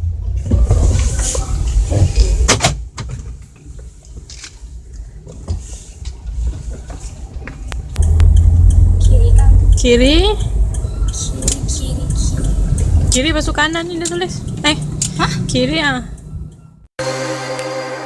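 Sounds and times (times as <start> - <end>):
car rumble from inside cabin: 5.2 - 16.8
sharp clicks and knocks: 6.9 - 11.7.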